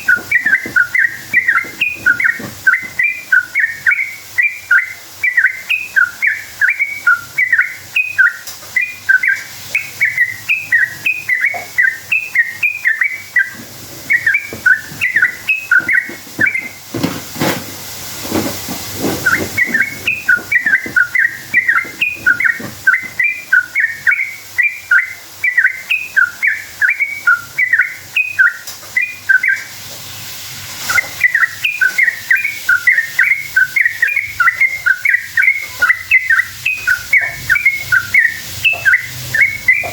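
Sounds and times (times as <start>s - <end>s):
bulbul singing bubbly chirps: 31.2s - 39.9s.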